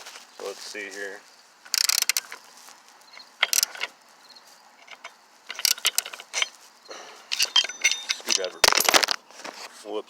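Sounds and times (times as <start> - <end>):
socket wrench clicking: 1.7 - 2.4, 3.4 - 3.9, 4.8 - 6.5.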